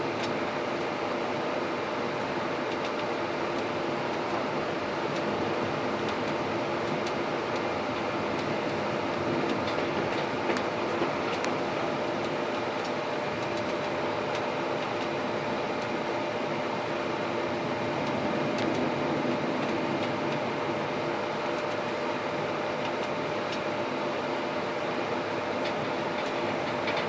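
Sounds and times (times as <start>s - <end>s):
mechanical hum: 0.0s - 27.0s.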